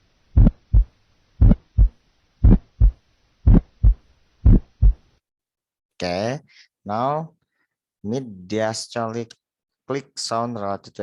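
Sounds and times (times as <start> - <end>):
heart valve click: 0.4 - 5.0
heartbeat thumps: 0.4 - 5.1.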